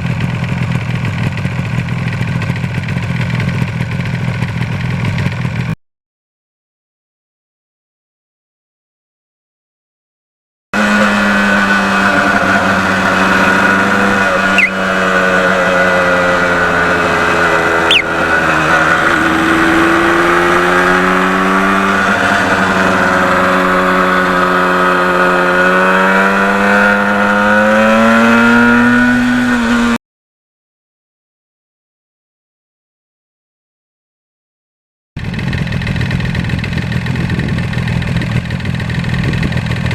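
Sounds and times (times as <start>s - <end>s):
motorcycle engine running: 0.0s - 5.8s, 10.8s - 30.0s, 35.2s - 39.9s.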